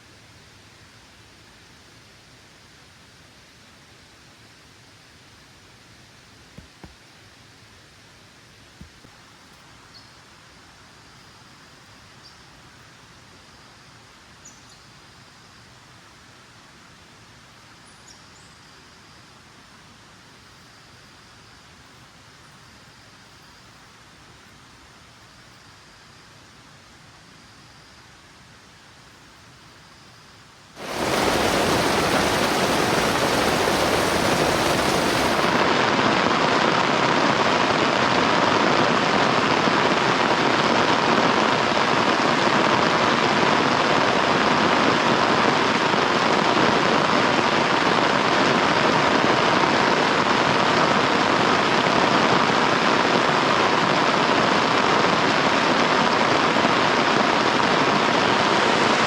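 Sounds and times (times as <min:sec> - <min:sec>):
faint steady hiss: 0:00.0 - 0:59.0
heavy rain: 0:30.8 - 0:59.0.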